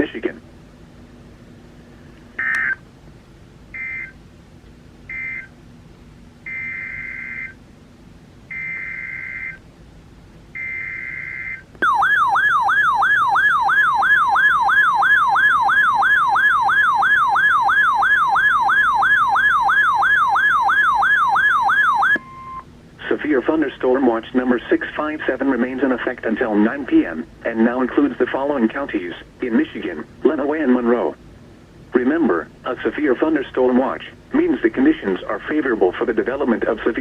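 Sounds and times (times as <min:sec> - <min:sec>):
warbling attention tone: 0:10.6 - 0:22.6.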